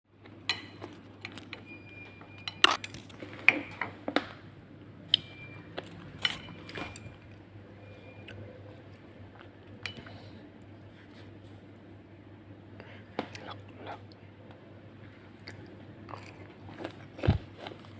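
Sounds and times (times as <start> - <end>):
cutlery clinking against a dish: 6.1 - 7.2.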